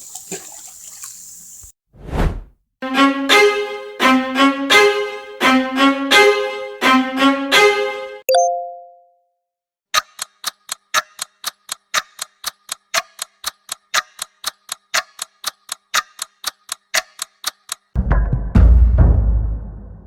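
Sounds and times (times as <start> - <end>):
clock-like ticking: 10.0 - 18.0.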